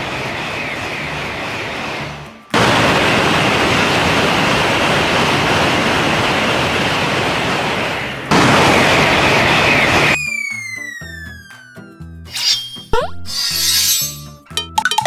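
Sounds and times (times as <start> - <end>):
train rushing past: 0.0 - 10.2.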